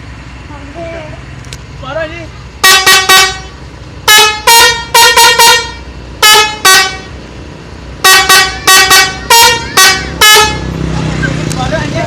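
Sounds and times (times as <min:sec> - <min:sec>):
bus musical air horns tooting: 0:02.6 - 0:07.2, 0:08.0 - 0:10.8.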